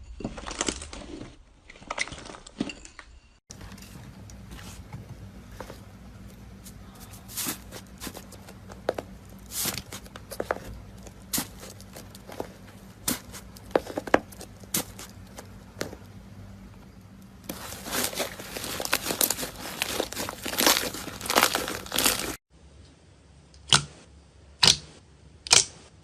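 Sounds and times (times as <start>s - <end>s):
slime crackling: 17.5s - 22.4s.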